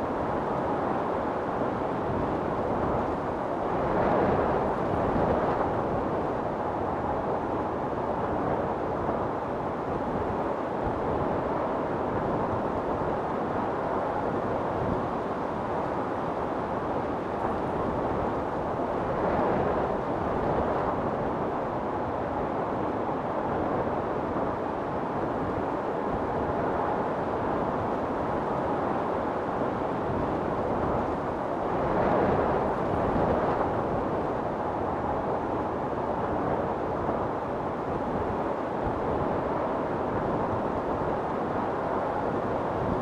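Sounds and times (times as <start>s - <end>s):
storm wind blowing: 23.5s - 43.0s.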